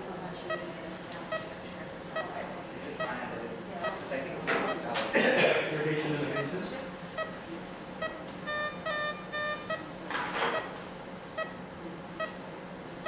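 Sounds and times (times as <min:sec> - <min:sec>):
patient monitor beeping: 0:00.5 - 0:02.4, 0:03.0 - 0:05.0, 0:06.3 - 0:11.6, 0:12.2 - 0:12.5
second electronic tone: 0:08.0 - 0:10.7.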